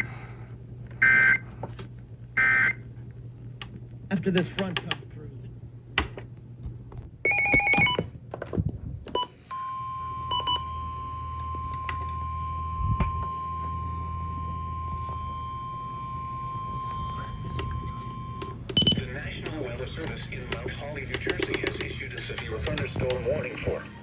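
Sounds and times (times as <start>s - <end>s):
low hum: 0.0s - 24.0s
steady warning alarm tone: 1.0s - 1.5s, 2.4s - 2.8s, 7.3s - 8.0s, 9.2s - 20.3s
data burst tones: 16.5s - 19.2s.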